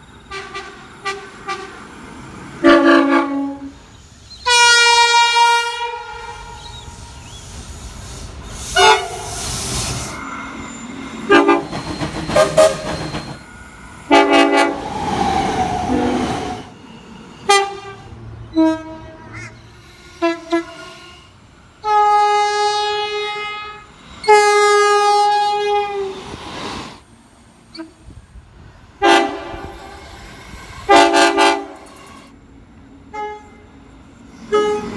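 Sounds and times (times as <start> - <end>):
passing train rumble and clatter: 0.0 - 34.9
train horn blasts: 0.3 - 1.8, 2.6 - 3.8, 4.5 - 6.8, 8.8 - 9.3, 11.3 - 11.8, 12.4 - 12.9, 14.1 - 14.8, 17.4 - 19.4, 20.2 - 26.1, 29.0 - 30.0, 30.9 - 31.9, 33.1 - 33.7, 34.5 - 34.9.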